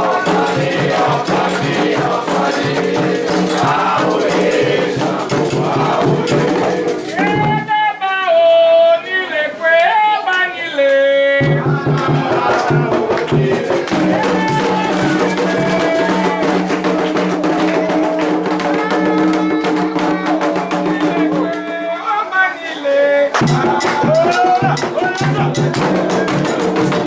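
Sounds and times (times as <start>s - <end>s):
hand drums and percussion: 0.0s - 7.7s, 11.4s - 21.9s, 23.3s - 27.0s
steady held notes: 0.0s - 7.7s
sung chant: 0.0s - 27.0s.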